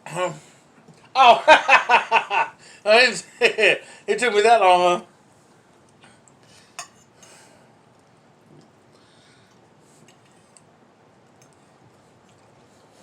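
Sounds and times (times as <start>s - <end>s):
cutlery clinking on a plate: 6.8s - 7.4s.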